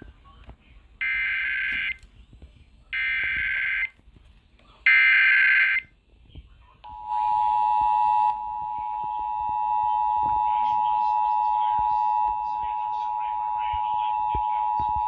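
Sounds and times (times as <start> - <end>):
long steady alert tone: 6.8 - 15.0.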